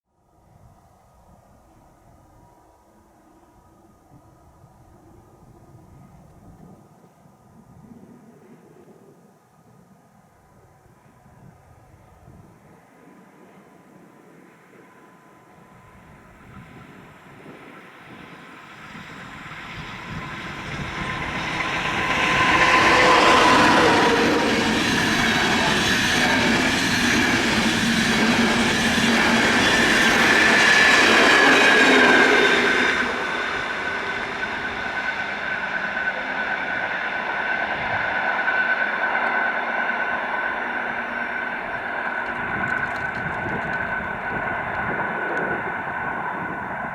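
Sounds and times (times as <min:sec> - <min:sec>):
train passing rumble: 0:10.3 - 0:46.9
high ringing wheel squeal: 0:18.5 - 0:46.9.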